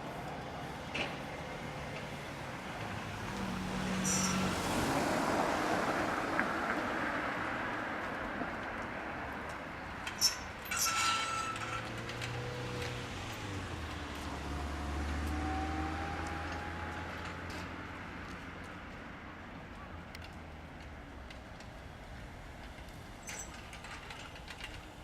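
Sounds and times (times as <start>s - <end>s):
passing vehicle: 0.0s - 25.0s
metal gate clanking shut: 4.0s - 4.7s, 10.1s - 13.6s
rattling clatter with ringing note: 4.0s - 4.7s, 10.0s - 13.6s, 23.2s - 25.0s.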